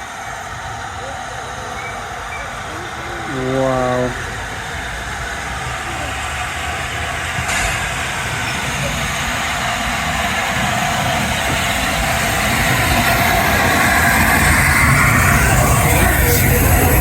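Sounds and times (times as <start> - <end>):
train rumbling: 0.0 - 17.0.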